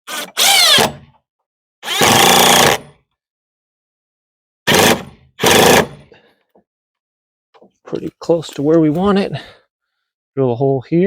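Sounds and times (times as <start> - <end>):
impact driver driving screws: 0.1 - 1.1, 1.8 - 2.9, 4.7 - 6.0.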